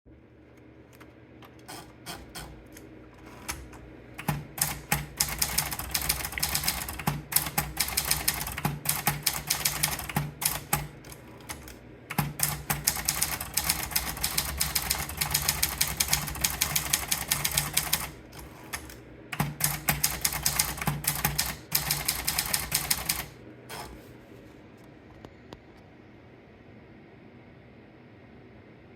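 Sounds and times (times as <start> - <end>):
manual typewriter clacking: 1.6 - 24.0.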